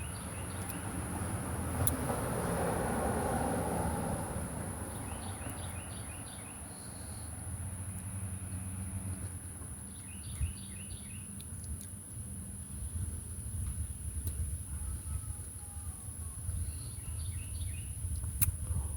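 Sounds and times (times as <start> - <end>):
bird chirping: 4.9 - 7.3, 9.8 - 11.4, 16.5 - 18.1.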